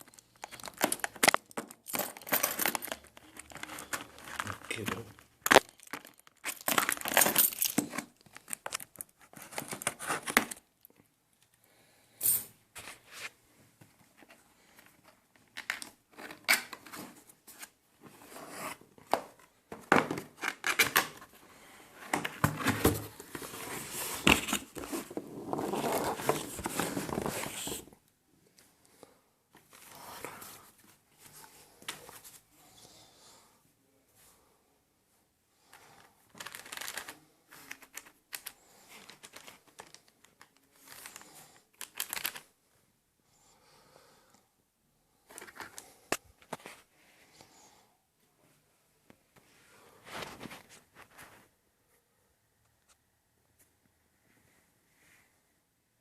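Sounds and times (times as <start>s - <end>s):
crinkling and tearing packaging: 0.0s - 10.7s, 23.3s - 27.9s, 36.3s - 42.5s.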